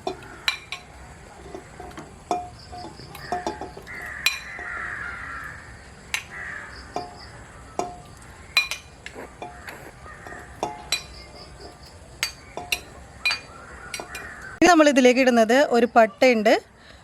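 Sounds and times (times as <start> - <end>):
crow cawing: 0.0 - 0.7, 3.2 - 8.5, 9.4 - 10.9, 13.2 - 14.6
metal utensils clinking on pot: 0.0 - 14.6.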